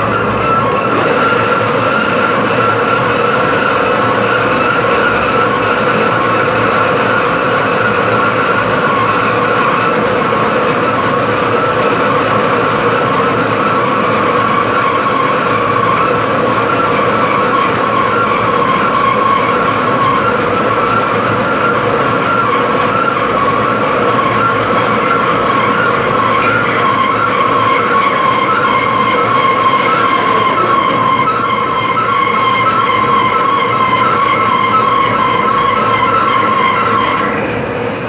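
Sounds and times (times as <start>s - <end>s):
metal-cutting machine whining: 0.0s - 38.0s.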